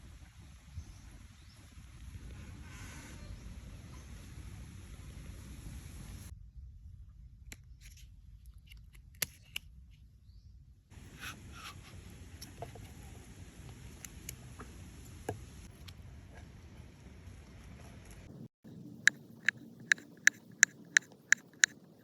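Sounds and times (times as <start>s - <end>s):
faint low rumble: 0.0s - 10.9s
handling clicks and scrapes: 11.0s - 13.0s, 18.0s - 22.0s.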